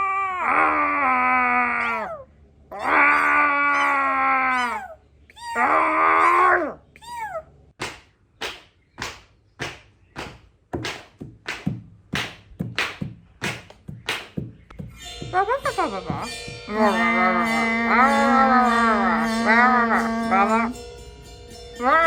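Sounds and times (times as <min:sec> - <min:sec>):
cat-like yowls: 0:00.0 - 0:07.5, 0:21.8 - 0:22.0
sharp rhythmic strikes: 0:07.8 - 0:22.0.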